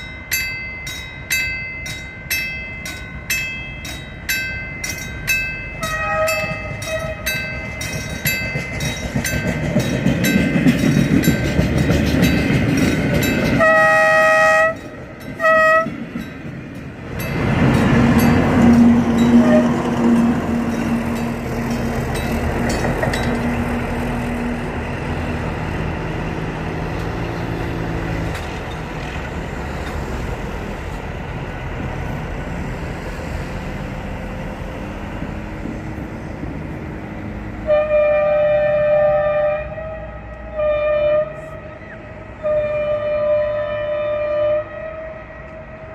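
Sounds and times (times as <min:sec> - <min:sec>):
locomotive engine hum: 0:00.0 - 0:45.9
train wheels clicking over rail joints: 0:01.3 - 0:37.4
freight wagons rumbling: 0:02.1 - 0:37.7
locomotive horn blasts: 0:05.8 - 0:07.5, 0:13.5 - 0:16.0, 0:18.5 - 0:21.3, 0:37.6 - 0:45.9.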